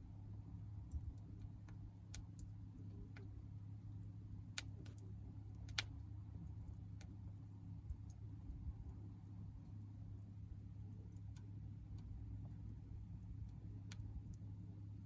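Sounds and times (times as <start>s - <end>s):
low steady hum: 0.0s - 15.0s
campfire crackling: 0.6s - 7.2s.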